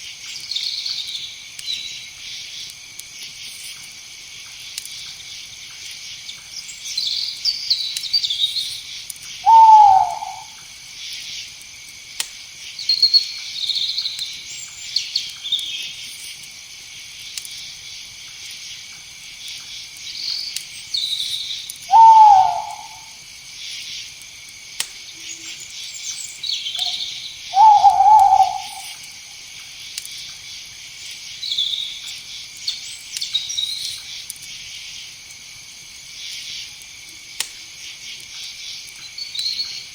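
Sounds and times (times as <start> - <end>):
night insects trilling: 0.0 - 39.9
night bird calls: 0.2 - 2.7, 4.9 - 11.5, 12.7 - 16.1, 19.5 - 24.2, 24.9 - 30.3, 31.0 - 34.3.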